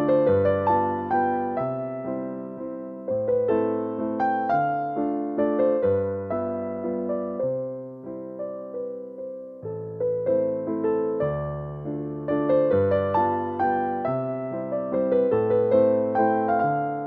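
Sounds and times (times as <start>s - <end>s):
gentle piano music: 0.0s - 17.0s.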